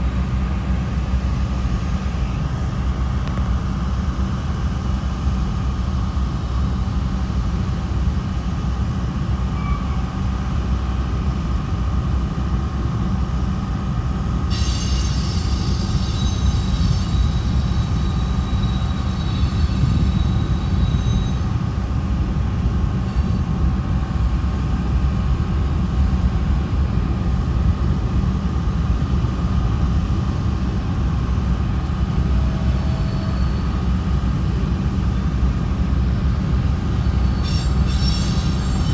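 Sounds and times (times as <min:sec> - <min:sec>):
train wheels rumbling on rail: 0:00.0 - 0:38.9
high wheel squeal: 0:09.5 - 0:10.1, 0:14.5 - 0:21.6, 0:31.9 - 0:33.9, 0:36.8 - 0:38.9.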